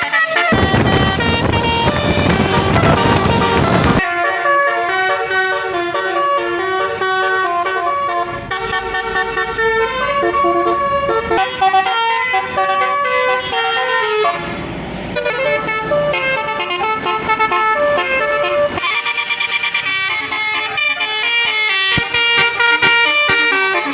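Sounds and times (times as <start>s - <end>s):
bus multi-tone horn melody: 0.0s - 23.9s
brief rushing noise: 0.5s - 4.0s.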